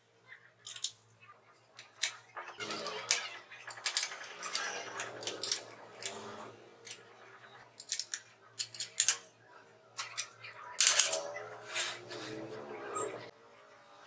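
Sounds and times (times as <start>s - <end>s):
scraping of parts: 0.6s - 1.2s, 1.8s - 13.3s
tools clicking and knocking: 0.6s - 1.2s, 1.8s - 7.1s, 7.7s - 9.3s, 10.0s - 11.4s.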